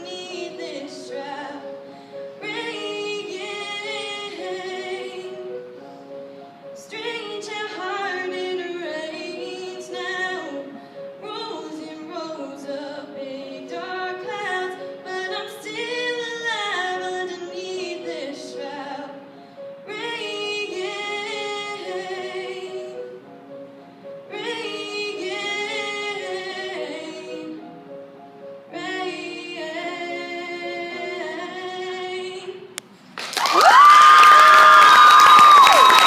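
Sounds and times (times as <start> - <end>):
girl singing a slow ballad: 0.0 - 5.8, 6.8 - 19.3.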